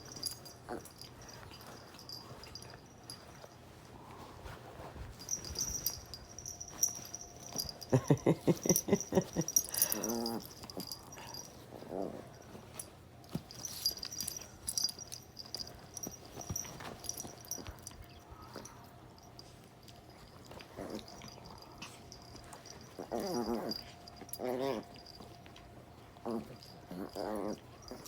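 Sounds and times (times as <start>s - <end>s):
dogs scuffling: 0.0s - 28.0s
dogs growling: 5.4s - 12.4s, 20.6s - 25.3s, 26.2s - 28.0s
dogs yelping: 22.8s - 25.2s.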